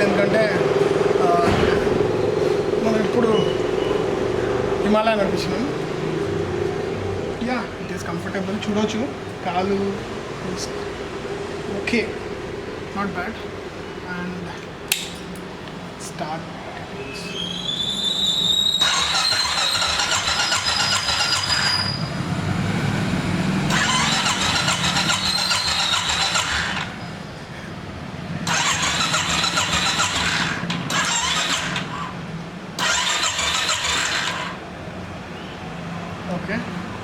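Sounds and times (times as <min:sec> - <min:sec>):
motorcycle engine bursts with squeal: 0:01.5 - 0:04.6, 0:17.0 - 0:27.8, 0:28.4 - 0:34.6
starter motor whine: 0:18.7 - 0:22.0, 0:23.6 - 0:27.0, 0:28.4 - 0:32.2, 0:32.8 - 0:34.6.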